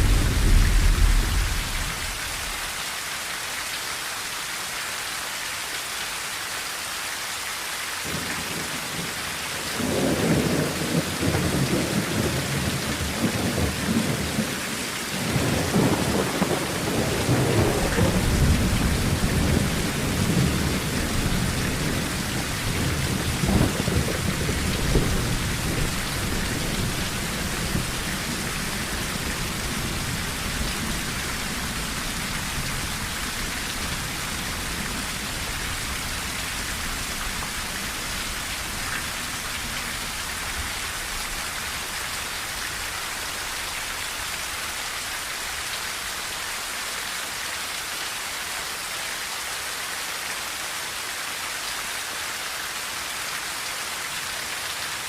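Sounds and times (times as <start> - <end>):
thunder rumbling: 0.0 - 2.7, 15.2 - 41.5
rain on a tin roof: 0.0 - 55.0.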